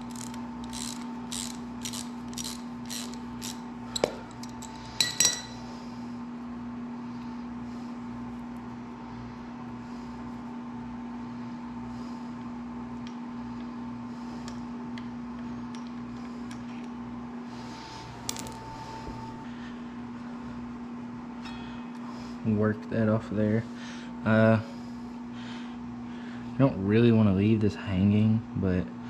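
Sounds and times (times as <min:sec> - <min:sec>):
steady mechanical hum: 0:00.0 - 0:29.0
metallic tool clicks: 0:00.1 - 0:05.5.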